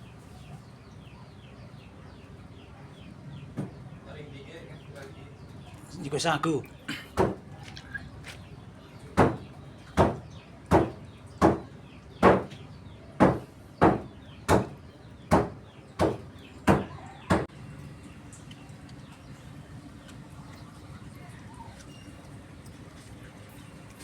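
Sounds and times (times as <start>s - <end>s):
sharp knocks or chops: 10.0s - 11.6s, 12.2s - 12.5s, 13.2s - 17.5s.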